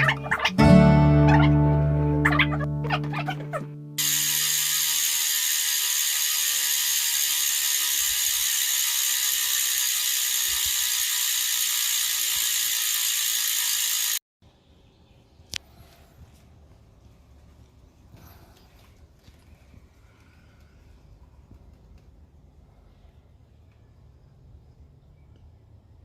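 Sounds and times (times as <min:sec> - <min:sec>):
bicycle freewheel ratcheting: 0:04.0 - 0:14.2.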